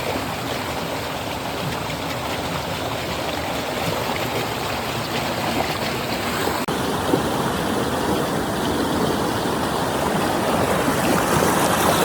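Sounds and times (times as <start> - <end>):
stream water flowing: 0.0 - 12.0.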